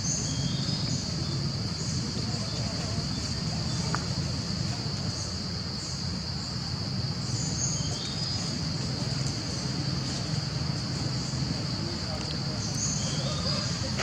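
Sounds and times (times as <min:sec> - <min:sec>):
insects droning: 0:00.0 - 0:14.0
faint chirps: 0:07.2 - 0:08.6, 0:11.2 - 0:14.0.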